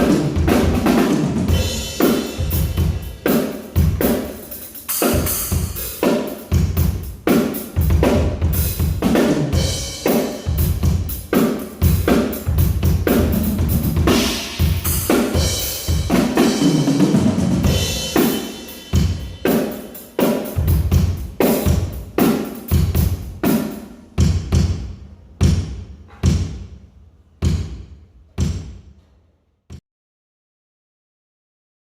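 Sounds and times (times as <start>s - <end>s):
snare drum: 0.0s - 24.8s
cymbals: 0.0s - 26.8s
kick drum: 28.4s - 28.8s.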